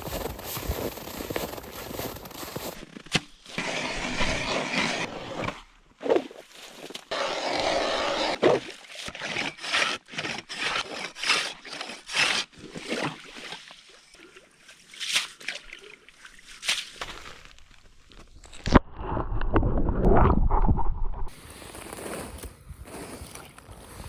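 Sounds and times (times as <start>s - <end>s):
scraping on ice and snow: 0.0s - 8.6s, 16.7s - 24.0s.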